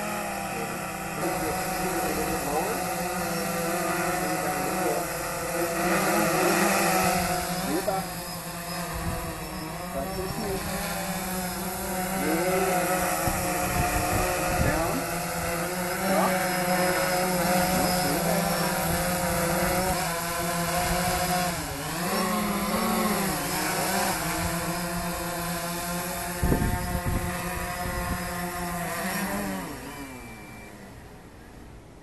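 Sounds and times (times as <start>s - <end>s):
drone propellers buzzing: 0.0s - 32.0s
wind buffeting microphone: 7.0s - 12.2s, 12.9s - 16.0s, 24.0s - 28.8s.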